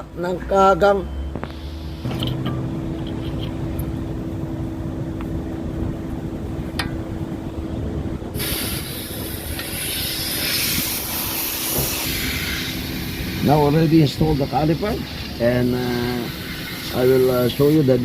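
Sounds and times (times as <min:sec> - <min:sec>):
low mechanical hum: 0:00.0 - 0:18.0
loud steady hiss: 0:01.4 - 0:02.8, 0:08.2 - 0:18.0.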